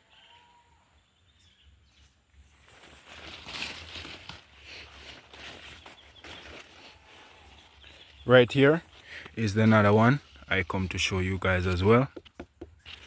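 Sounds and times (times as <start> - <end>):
footsteps rustling through leaves: 2.5 - 8.0.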